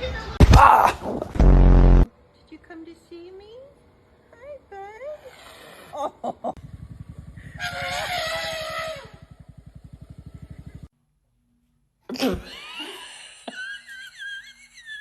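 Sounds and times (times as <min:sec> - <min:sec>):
low fast pulsing: 0:06.5 - 0:10.9.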